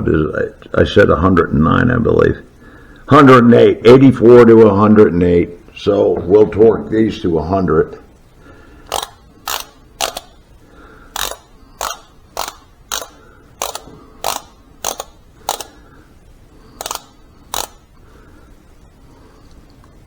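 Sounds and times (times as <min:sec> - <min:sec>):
torque wrench clicking: 0:08.8 - 0:10.5, 0:11.1 - 0:15.9, 0:16.8 - 0:18.0.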